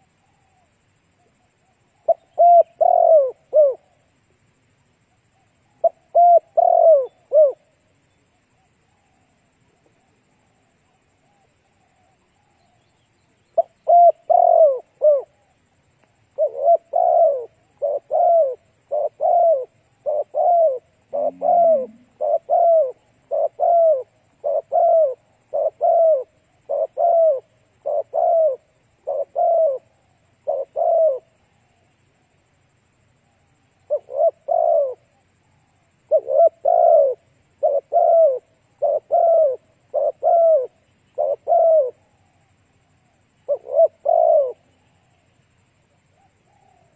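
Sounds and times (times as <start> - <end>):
dove cooing: 0.0 - 4.0, 5.3 - 7.8, 13.5 - 31.9, 33.7 - 45.2, 46.2 - 46.9.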